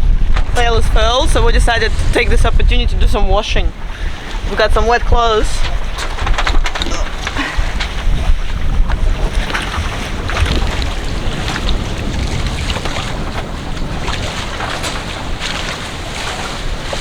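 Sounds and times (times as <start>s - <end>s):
water rushing along boat hull: 0.0s - 17.0s
wind buffeting microphone: 0.0s - 17.0s
low rumble: 6.8s - 15.8s.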